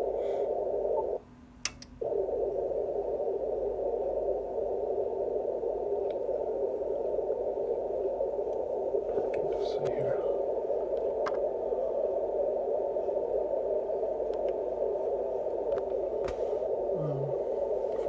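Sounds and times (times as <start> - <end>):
radio receiver hiss: 0.0 - 18.0
radio click: 8.5 - 10.0, 10.9 - 11.5, 14.2 - 14.6, 15.4 - 16.6.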